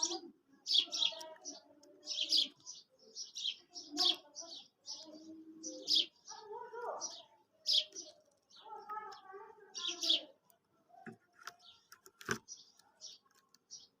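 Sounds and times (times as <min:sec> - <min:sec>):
sharp clicks: 0:10.4 - 0:13.9.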